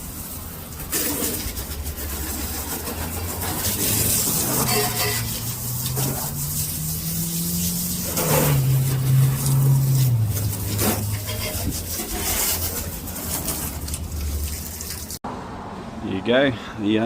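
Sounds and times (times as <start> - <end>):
rain hiss: 0.0 - 11.6
vehicle engine changing gears: 0.0 - 15.4.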